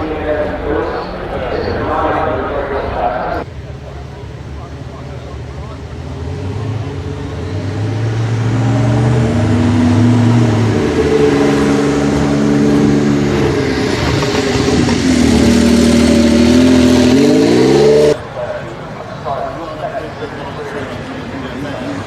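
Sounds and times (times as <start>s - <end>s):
car engine revving: 4.2s - 18.2s.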